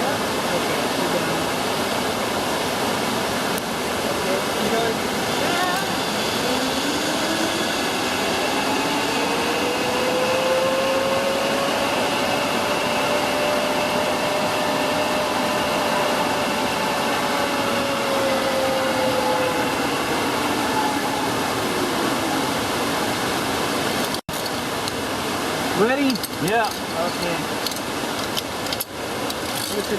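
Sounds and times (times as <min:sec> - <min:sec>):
steady rushing noise: 0:00.0 - 0:29.9
zip line pulleys whining on cable: 0:03.0 - 0:24.2.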